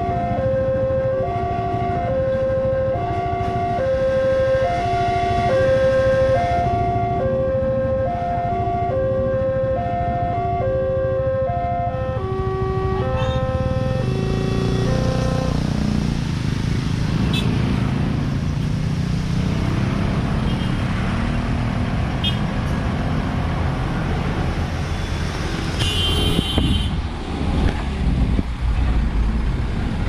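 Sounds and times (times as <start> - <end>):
road traffic rumble: 0.0 - 30.0
electronic warning tones: 9.9 - 15.7.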